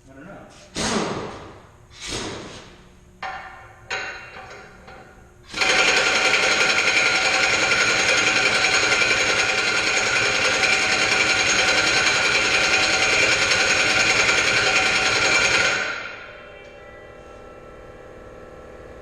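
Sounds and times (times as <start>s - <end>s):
impact wrench banging and rattling: 3.2s - 16.1s.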